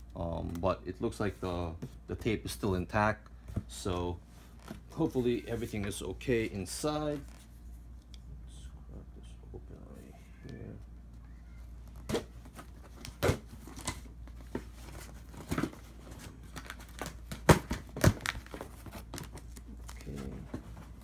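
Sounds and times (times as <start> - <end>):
cardboard and paper crinkling: 11.8 - 21.0.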